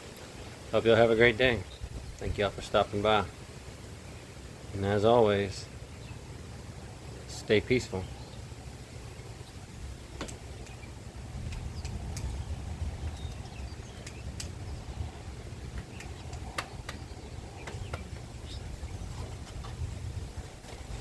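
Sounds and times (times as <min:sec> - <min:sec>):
wind buffeting microphone: 0:00.0 - 0:21.0
high bird chirps: 0:11.6 - 0:19.7.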